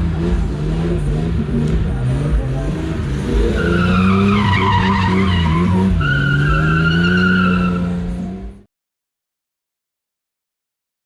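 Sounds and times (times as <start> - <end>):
car engine revving: 0.0 - 8.7
tyres squealing: 3.4 - 8.0.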